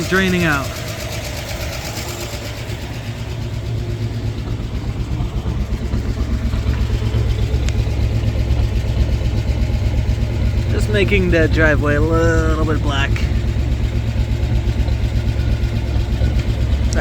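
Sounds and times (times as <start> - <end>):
car engine running: 0.0 - 17.0.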